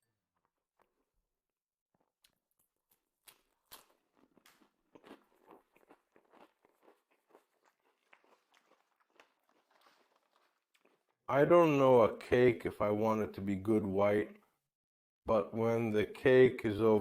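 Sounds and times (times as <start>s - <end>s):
person chewing food: 0.2s - 1.3s, 1.9s - 11.3s.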